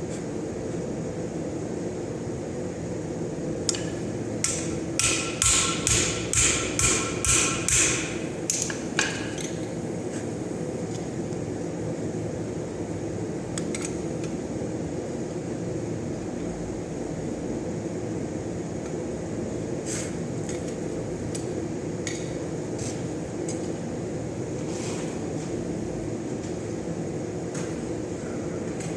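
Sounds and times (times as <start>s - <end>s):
hammer striking steel on anvil: 3.7s - 9.3s.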